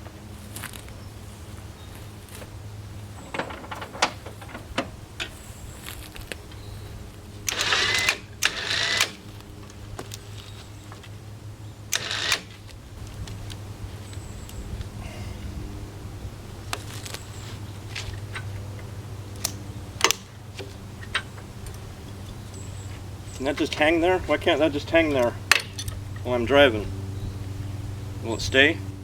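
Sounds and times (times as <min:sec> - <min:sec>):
low engine hum: 0:00.0 - 0:29.0
metal chain clinking and rattling: 0:03.2 - 0:04.9.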